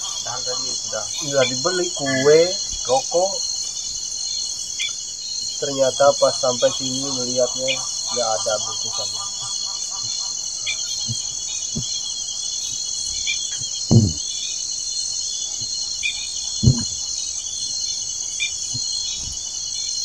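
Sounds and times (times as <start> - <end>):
crickets chirping: 0.0 - 20.0
dull thumps: 13.9 - 14.2, 16.6 - 17.0.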